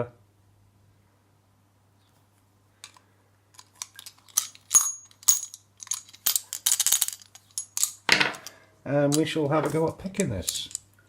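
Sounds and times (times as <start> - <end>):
metal clicks of lock picking: 3.6 - 9.3.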